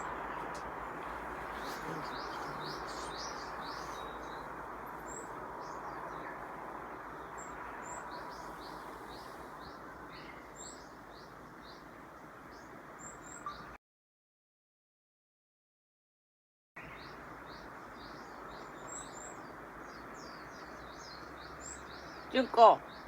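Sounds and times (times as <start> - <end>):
steady background hiss: 0.0 - 13.1
small songbird chirping: 0.0 - 13.8, 16.8 - 23.0.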